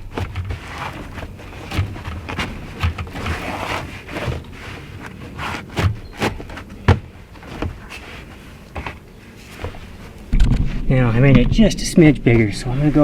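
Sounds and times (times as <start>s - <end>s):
knocks and thumps: 0.0s - 4.6s, 5.4s - 9.0s
carpet scuffing and rustling: 0.0s - 10.9s.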